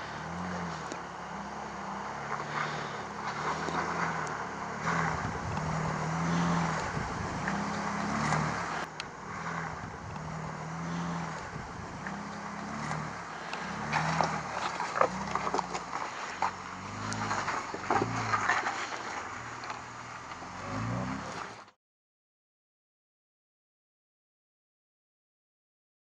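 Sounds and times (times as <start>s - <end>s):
vehicle engine running: 0.0s - 21.7s.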